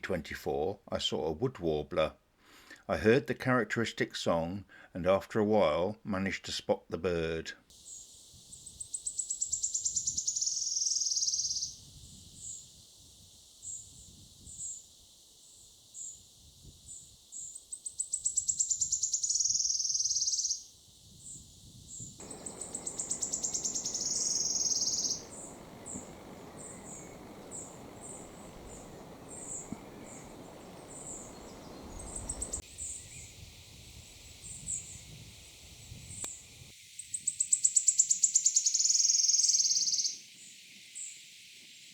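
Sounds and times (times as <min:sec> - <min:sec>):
wood warbler trilling song: 0:07.9 - 0:11.8, 0:17.4 - 0:20.7, 0:21.3 - 0:33.6, 0:37.2 - 0:41.1
single high sharp bird notes: 0:22.2 - 0:32.6.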